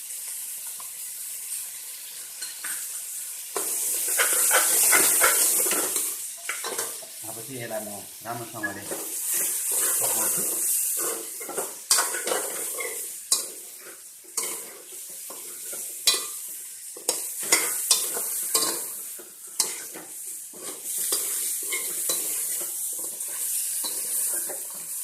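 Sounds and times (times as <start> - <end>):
food sizzling in a pot: 0.0 - 25.0
spoon scraping a pot: 4.0 - 7.0, 19.6 - 24.8.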